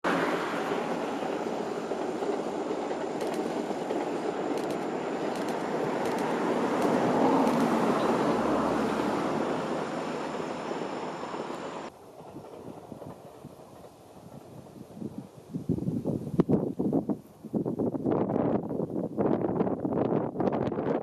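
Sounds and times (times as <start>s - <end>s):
train passing: 0.0s - 15.7s
faint wind noise: 0.1s - 21.0s.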